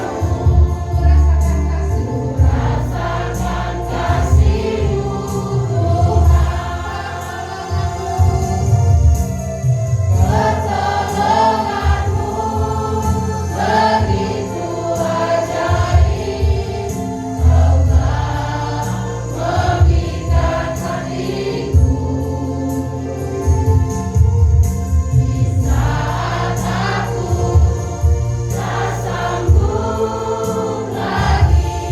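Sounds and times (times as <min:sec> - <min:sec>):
instrumental accompaniment with bass: 0:00.0 - 0:31.9
voices singing worship song: 0:00.0 - 0:31.9.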